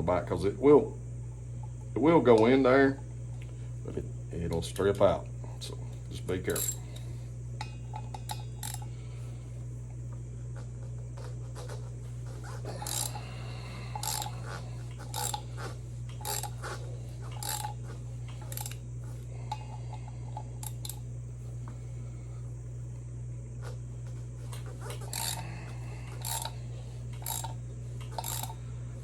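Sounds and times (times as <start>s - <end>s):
steady low hum: 0.0s - 29.0s
wrench clinking on metal bolts: 6.3s - 7.0s, 16.2s - 16.6s, 17.4s - 17.8s, 18.4s - 18.8s, 20.6s - 21.0s.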